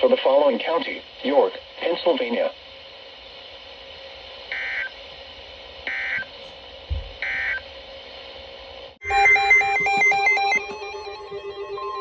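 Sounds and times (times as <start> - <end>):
radio hiss and hum: 0.0 - 9.0.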